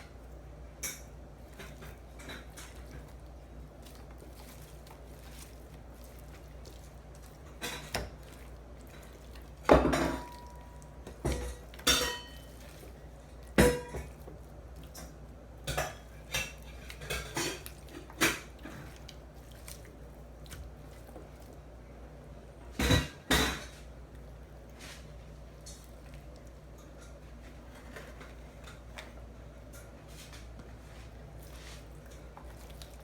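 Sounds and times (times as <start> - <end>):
utensils clinking against dish: 7.6 - 12.8, 13.6 - 14.2.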